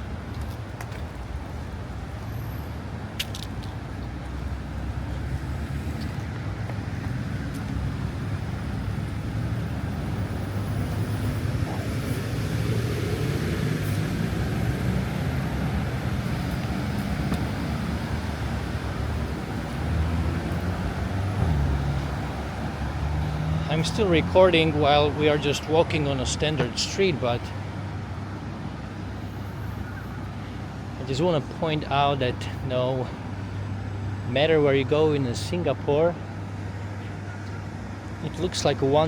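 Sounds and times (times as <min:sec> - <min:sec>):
passing cars rumble: 0:00.0 - 0:39.0
vehicle passing by: 0:04.8 - 0:26.6.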